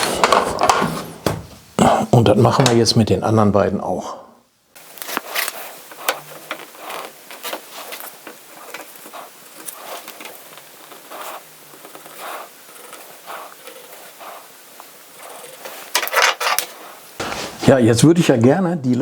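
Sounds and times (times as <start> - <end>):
rustling and scraping: 0.0 - 1.8, 4.8 - 17.9.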